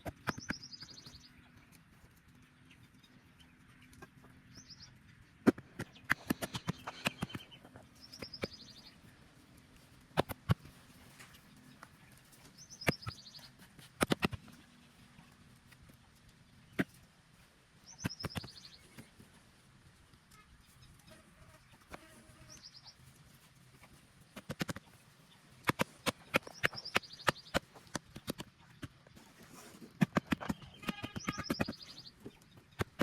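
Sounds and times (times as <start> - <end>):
small bird chirp trills: 0.1 - 9.2, 11.1 - 15.1, 17.8 - 19.3, 20.3 - 29.0, 30.2 - 33.0
sharp clicks and taps: 12.8 - 14.6, 24.4 - 25.0, 25.6 - 29.2.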